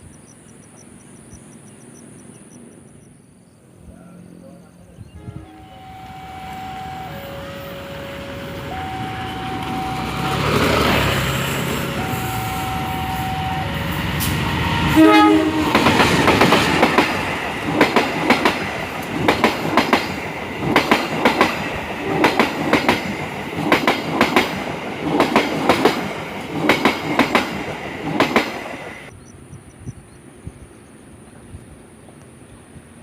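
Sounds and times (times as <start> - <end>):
train horn: 5.1 - 16.3
train wheels clattering over rail joints: 15.7 - 28.8.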